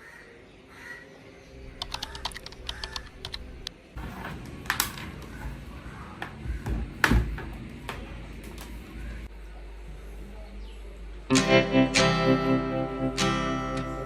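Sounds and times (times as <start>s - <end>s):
keyboard key clicks: 1.8s - 3.4s.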